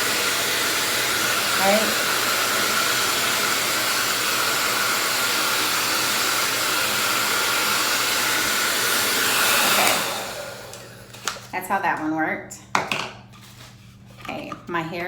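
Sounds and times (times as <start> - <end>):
hair dryer blowing: 0.0 - 11.6.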